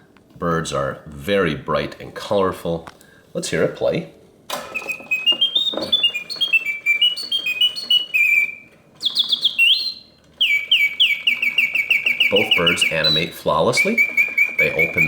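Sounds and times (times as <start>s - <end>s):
mechanical bird whistling: 4.6s - 15.0s.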